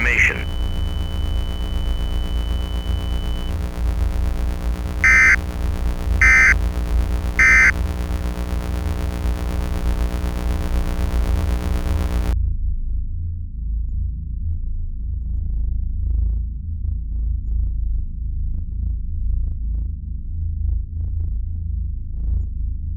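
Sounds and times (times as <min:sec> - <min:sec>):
alert data tone bursts: 0:00.0 - 0:12.4
steady low hum: 0:00.0 - 0:12.4.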